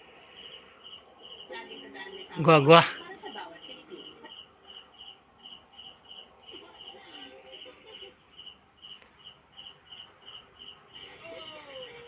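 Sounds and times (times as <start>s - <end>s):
cricket chirping: 0.0s - 12.0s.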